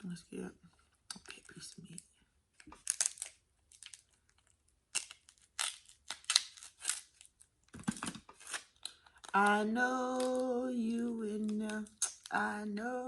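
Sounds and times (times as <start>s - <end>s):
crab shells cracking by hand: 2.6s - 7.5s.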